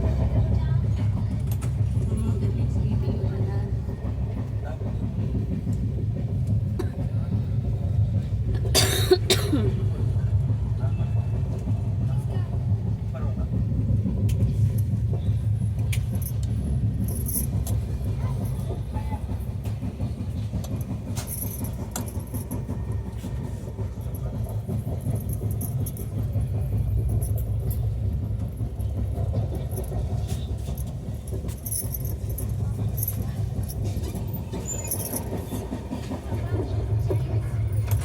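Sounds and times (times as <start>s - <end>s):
train rumble: 0.0s - 38.0s
light rattles and clinks: 14.2s - 38.0s.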